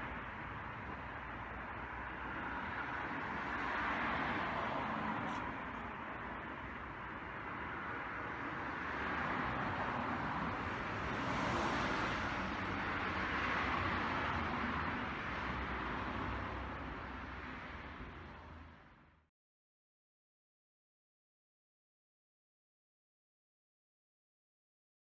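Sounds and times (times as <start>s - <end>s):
road traffic noise: 0.0s - 19.3s.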